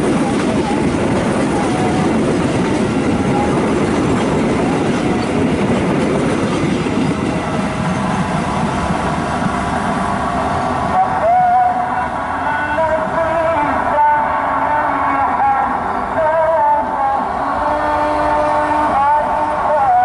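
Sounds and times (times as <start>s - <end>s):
train wheels clattering over rails: 0.0s - 9.6s.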